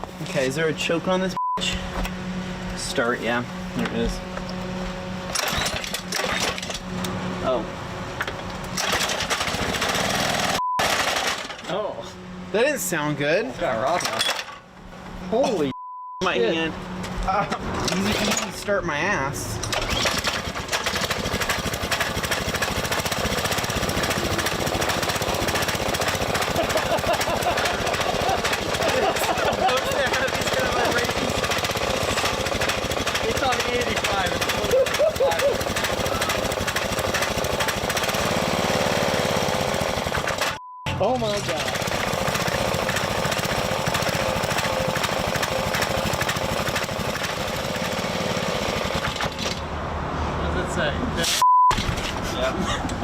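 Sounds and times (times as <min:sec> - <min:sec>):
small gas engine running: 0:02.6 - 0:07.6, 0:08.7 - 0:11.8, 0:19.7 - 0:49.6.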